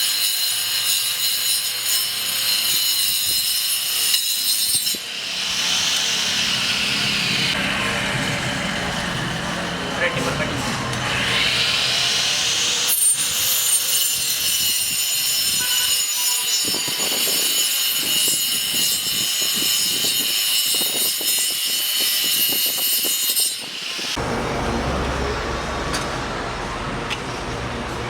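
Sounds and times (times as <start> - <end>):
blade rasping through workpiece: 0.0 - 6.5, 11.2 - 24.2
electric cutter blade whining: 0.0 - 8.7, 10.7 - 24.2.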